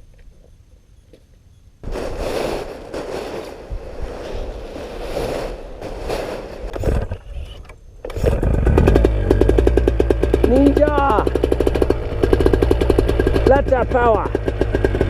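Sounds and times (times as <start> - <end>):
rustling and scraping: 0.0 - 8.8
paramotor engine running: 8.0 - 15.0.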